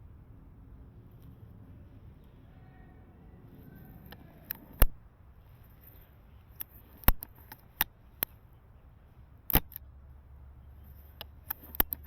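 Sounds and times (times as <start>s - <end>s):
rifle bolt clicks and clacks: 6.6s - 8.4s, 9.5s - 9.8s, 11.0s - 12.0s.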